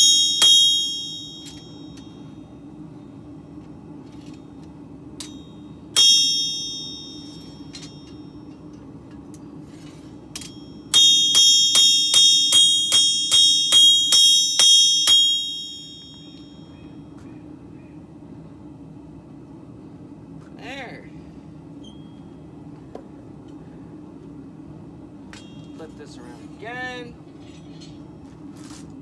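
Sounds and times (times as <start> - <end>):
hammer striking steel on anvil: 0.0 - 2.3, 5.2 - 8.7, 10.3 - 16.7, 25.3 - 25.9
low steady hum: 0.0 - 29.0.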